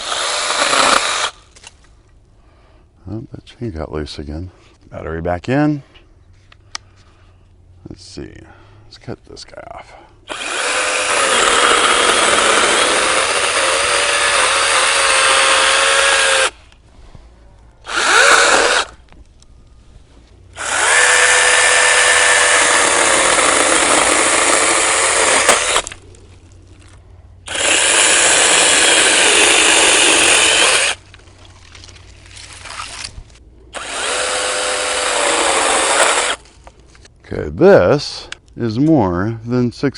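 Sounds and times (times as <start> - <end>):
mini chainsaw motor whining: 0.0 - 1.4, 10.3 - 16.6, 17.9 - 19.0, 20.6 - 26.0, 27.5 - 31.0, 33.7 - 36.4.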